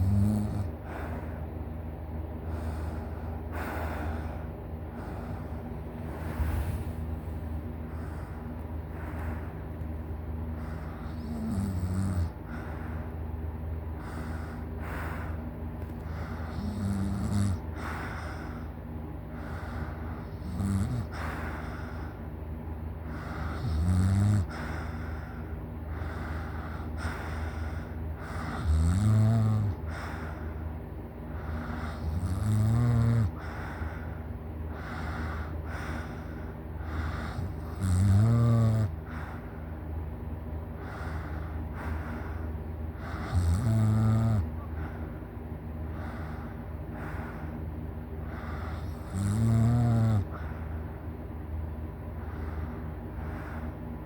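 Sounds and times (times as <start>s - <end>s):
person snoring loudly: 0.0s - 0.7s, 10.6s - 12.4s, 16.4s - 17.6s, 20.3s - 21.3s, 23.2s - 24.7s, 28.2s - 29.8s, 31.7s - 33.5s, 37.0s - 39.0s, 43.0s - 44.5s, 48.7s - 50.4s.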